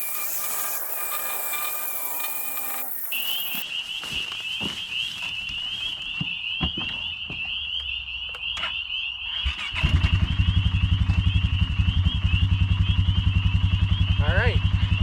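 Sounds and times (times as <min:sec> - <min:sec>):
frogs trilling: 0:00.0 - 0:15.0
engine running with low putter: 0:09.8 - 0:15.0.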